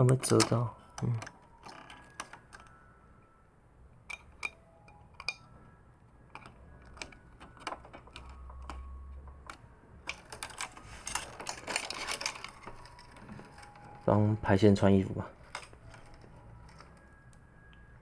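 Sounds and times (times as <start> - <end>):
plastic parts clicking: 0.0 - 2.8, 4.1 - 14.1, 15.3 - 17.4.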